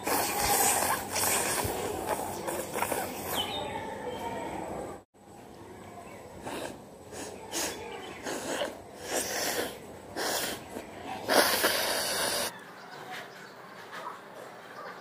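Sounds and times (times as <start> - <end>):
woman blowing her nose: 0.0 - 2.0, 6.5 - 10.6, 11.3 - 12.5.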